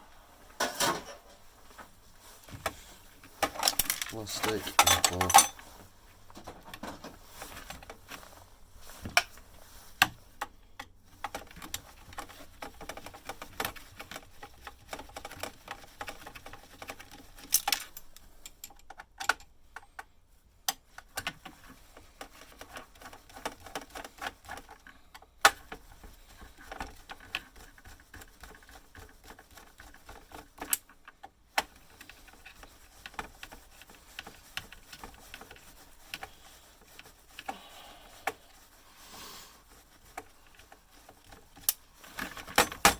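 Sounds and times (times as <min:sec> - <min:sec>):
parts and tools clattering: 0:00.6 - 0:01.5, 0:02.4 - 0:07.9, 0:17.4 - 0:19.9, 0:42.1 - 0:42.9.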